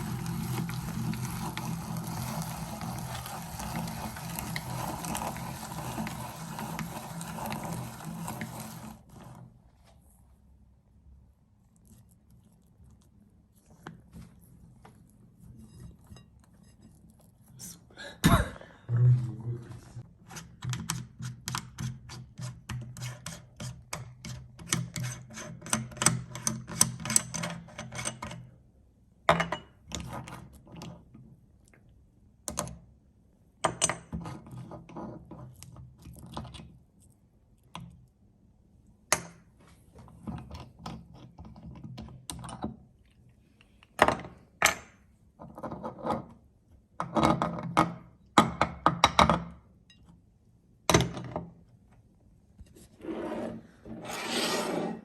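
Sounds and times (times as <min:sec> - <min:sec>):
meat grinder crunching: 0:00.0 - 0:09.4
low hum: 0:18.3 - 0:20.0.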